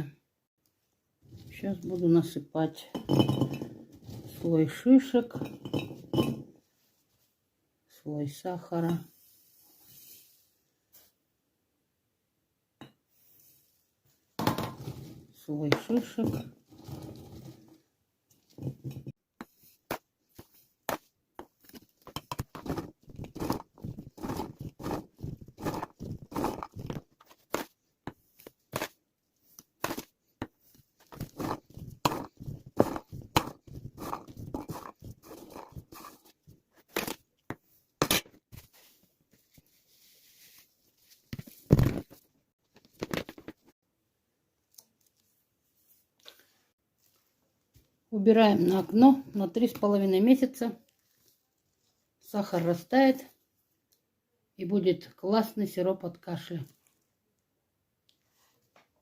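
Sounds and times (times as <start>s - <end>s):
rustles and knocks in glass jar: 2.8s - 6.6s, 18.4s - 28.2s, 29.9s - 37.7s.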